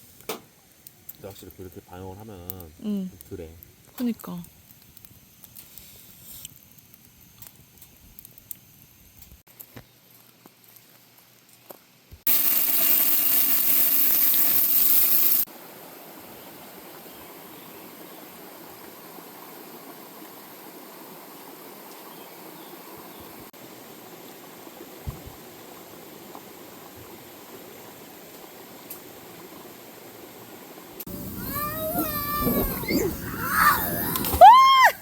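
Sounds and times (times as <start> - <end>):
stream water running: 12.3 - 35.0.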